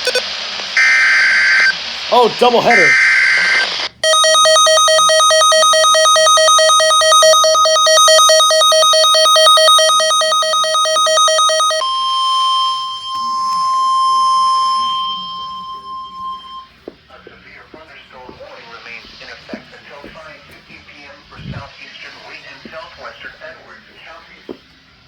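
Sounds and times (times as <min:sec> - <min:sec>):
rapid buzzy electronic beeping: 0:00.0 - 0:01.8, 0:02.6 - 0:16.6
steady warning alarm tone: 0:00.8 - 0:16.8.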